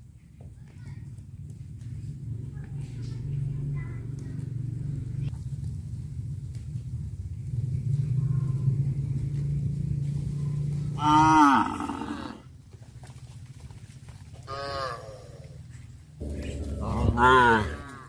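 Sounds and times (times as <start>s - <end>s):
cow mooing: 11.0s - 12.4s, 16.2s - 18.0s.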